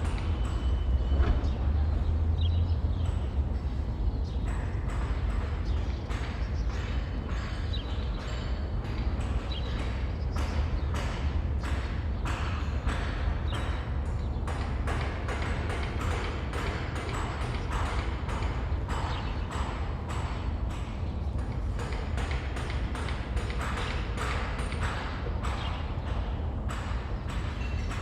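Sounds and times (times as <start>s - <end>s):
traffic rumble: 0.0s - 4.5s.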